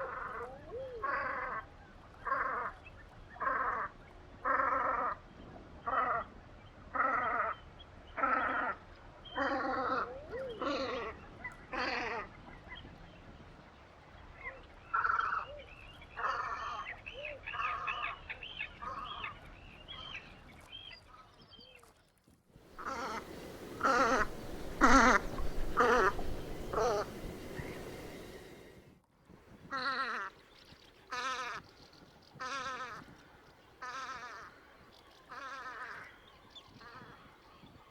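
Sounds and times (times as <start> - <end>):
thin arching whistles: 22.7 - 28.8
harsh nasal bleating duck calls: 22.8 - 27.9.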